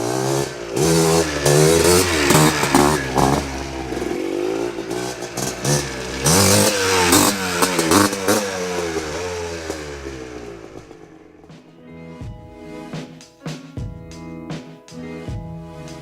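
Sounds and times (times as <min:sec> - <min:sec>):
two-stroke engine revving: 0:00.0 - 0:11.6.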